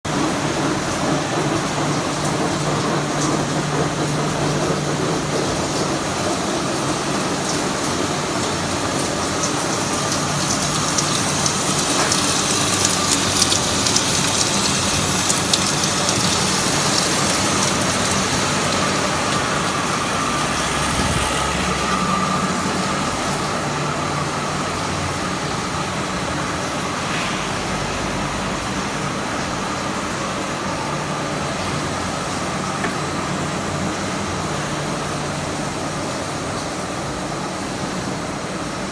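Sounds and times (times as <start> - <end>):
factory machinery humming: 0.1 - 38.9.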